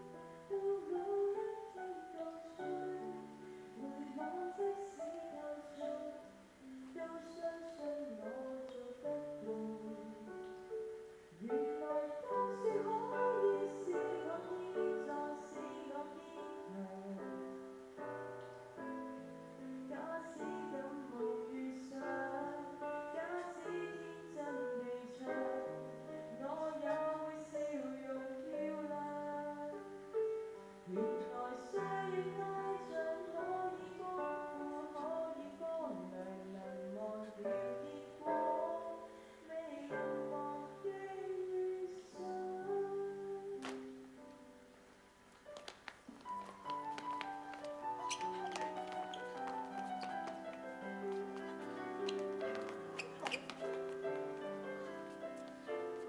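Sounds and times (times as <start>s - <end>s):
woman singing slow song: 0.0s - 10.7s, 11.4s - 17.6s, 19.8s - 30.0s, 30.8s - 44.3s
piano accompaniment: 0.0s - 56.0s.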